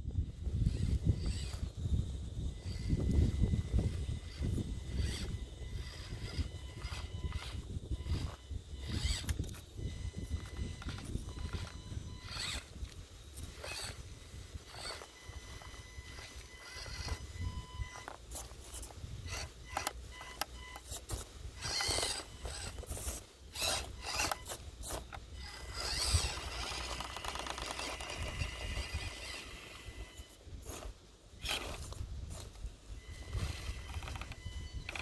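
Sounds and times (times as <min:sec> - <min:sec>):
small electric motor whining: 0:00.1 - 0:35.0
tyres scraping against stone: 0:17.9 - 0:29.5.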